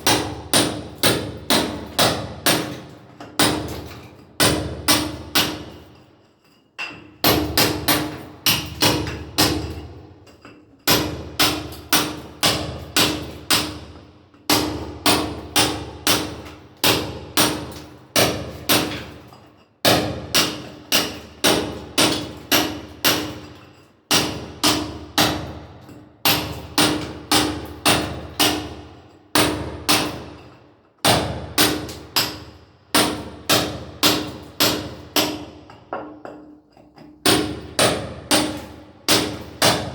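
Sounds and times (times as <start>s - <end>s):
hammer striking chisel: 0.0s - 5.8s, 6.8s - 9.8s, 19.8s - 25.6s, 31.0s - 36.6s, 37.2s - 39.9s.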